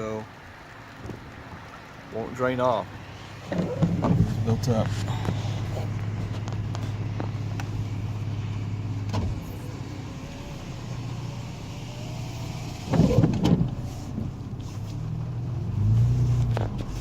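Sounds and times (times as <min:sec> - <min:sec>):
car engine hum: 0:00.0 - 0:17.0
road noise: 0:00.0 - 0:17.0.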